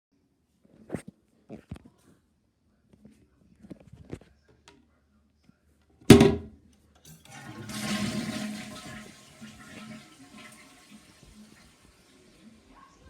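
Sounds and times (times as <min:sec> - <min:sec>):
toilet flushing: 0:07.1 - 0:12.6.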